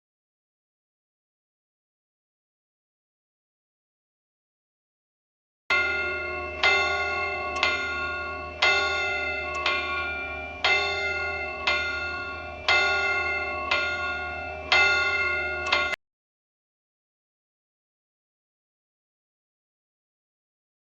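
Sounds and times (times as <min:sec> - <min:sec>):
clock bell striking: 0:05.7 - 0:16.0.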